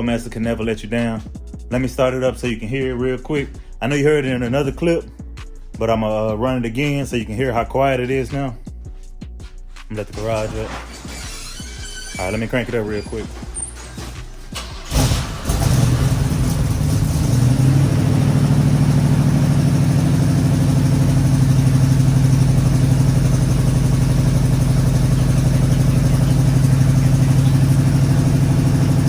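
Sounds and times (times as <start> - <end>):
car engine idling: 10.2 - 29.0.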